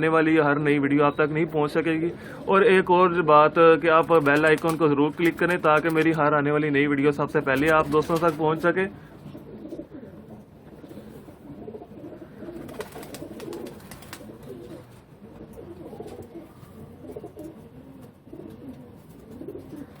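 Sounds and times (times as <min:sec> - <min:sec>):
pigeons cooing: 0:08.5 - 0:20.0.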